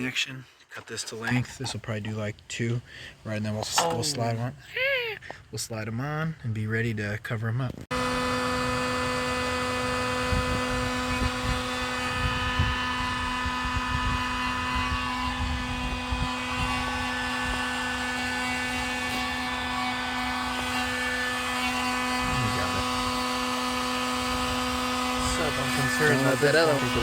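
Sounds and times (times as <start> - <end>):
heat gun motor hum: 7.9 - 27.0.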